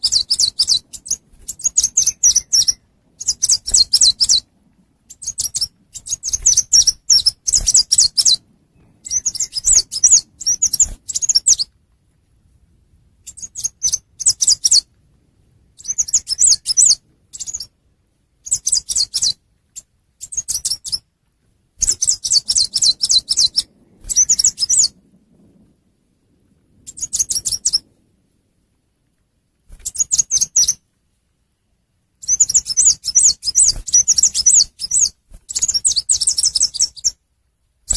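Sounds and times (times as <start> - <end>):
songbird twittering chirps: 0.0 - 11.8, 13.2 - 14.9, 15.8 - 17.8, 18.4 - 21.1, 21.8 - 25.0, 26.8 - 27.9, 29.8 - 30.8, 32.2 - 37.2.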